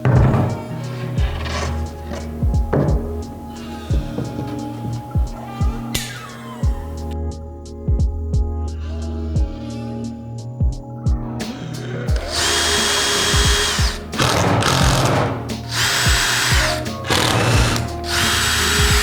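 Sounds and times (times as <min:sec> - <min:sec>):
power drill whining: 0:00.0 - 0:07.2, 0:12.1 - 0:19.0
background music: 0:00.0 - 0:19.0.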